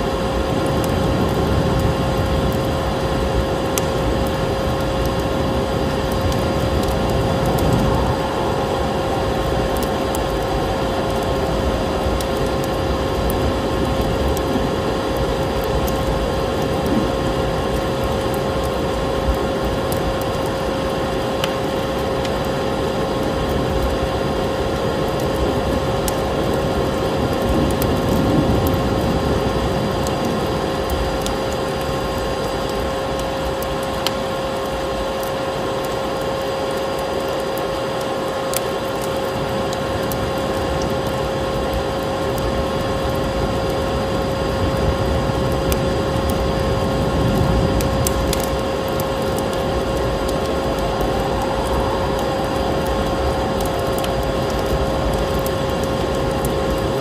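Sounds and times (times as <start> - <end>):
wood fire crackling: 0.0 - 57.0
wind rushing: 5.7 - 13.1, 49.6 - 55.2.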